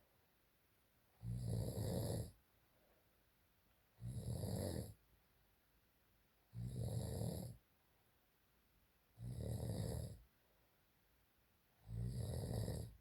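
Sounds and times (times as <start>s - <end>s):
person snoring: 1.2s - 2.4s, 4.0s - 5.0s, 6.5s - 7.6s, 9.2s - 10.2s, 11.8s - 13.0s.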